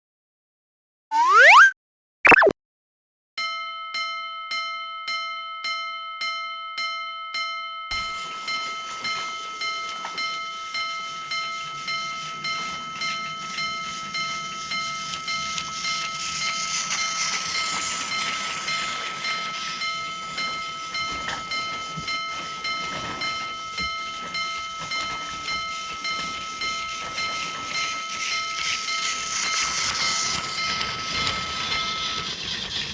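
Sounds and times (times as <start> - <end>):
railroad crossing bell ringing: 3.4 - 32.6
train passing: 8.2 - 32.9.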